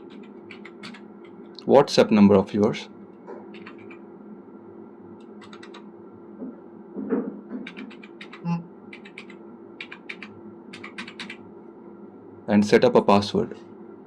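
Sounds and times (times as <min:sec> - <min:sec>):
keyboard keys tapping: 0:00.0 - 0:01.4, 0:03.5 - 0:04.0, 0:05.3 - 0:05.8, 0:07.6 - 0:11.4.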